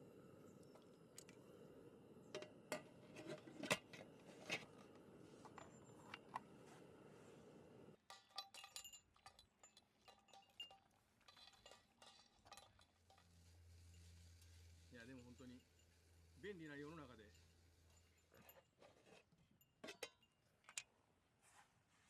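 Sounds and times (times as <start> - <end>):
dishes and glass clinking: 8.0 - 13.3, 19.6 - 20.3.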